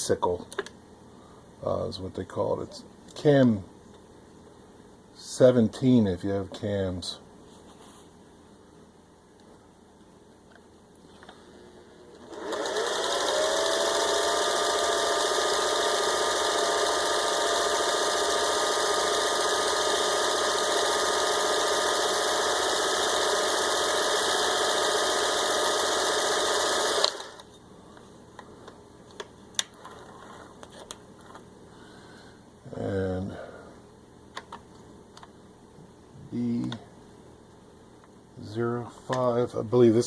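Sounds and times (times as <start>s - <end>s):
sewing machine running: 12.1s - 27.4s.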